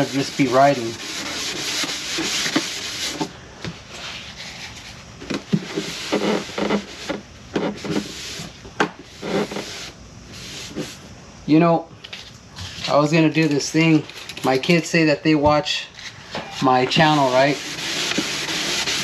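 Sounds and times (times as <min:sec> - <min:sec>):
sandpaper rubbing: 0:00.0 - 0:03.3, 0:05.7 - 0:11.0, 0:16.6 - 0:19.0.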